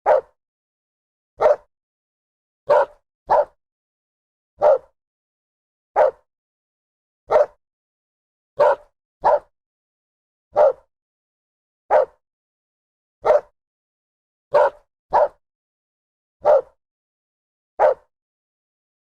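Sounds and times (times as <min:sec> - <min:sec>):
dog barking: 0:00.0 - 0:00.4, 0:01.4 - 0:01.7, 0:02.7 - 0:03.6, 0:04.6 - 0:05.0, 0:06.0 - 0:06.3, 0:07.3 - 0:07.6, 0:08.6 - 0:09.5, 0:10.5 - 0:10.9, 0:11.9 - 0:12.2, 0:13.2 - 0:13.6, 0:14.5 - 0:15.4, 0:16.4 - 0:16.8, 0:17.8 - 0:18.1.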